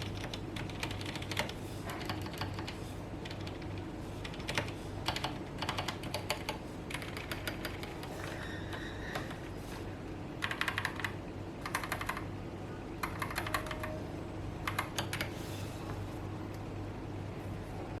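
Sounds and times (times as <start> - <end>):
mechanical keyboard typing: 0.0 - 8.1, 10.4 - 12.3, 13.0 - 14.0, 14.6 - 15.4
low steady hum: 0.0 - 18.0.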